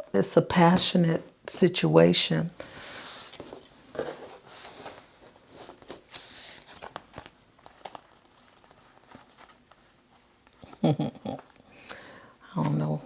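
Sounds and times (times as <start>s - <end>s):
cards rustling softly: 2.6s - 10.8s.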